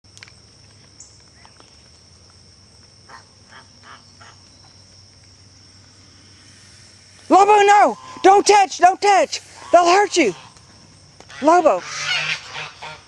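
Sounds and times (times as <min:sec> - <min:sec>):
insect chirring: 0:00.0 - 0:13.0
geese honking: 0:07.3 - 0:13.0.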